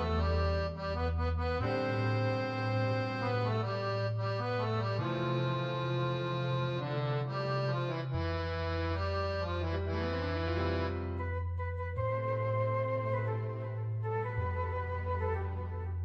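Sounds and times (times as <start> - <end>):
instrumental organ-like music: 0.0 - 11.2.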